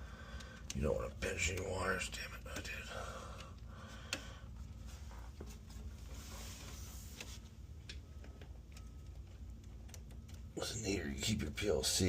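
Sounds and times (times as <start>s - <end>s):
steady low hum: 0.0s - 12.0s
light clicks and taps on plastic: 0.3s - 5.8s.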